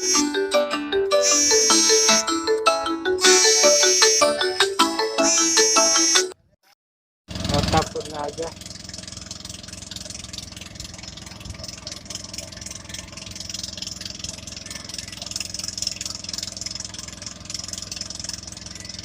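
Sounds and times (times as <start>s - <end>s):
motor engine running: 1.2s - 2.3s, 7.3s - 19.0s.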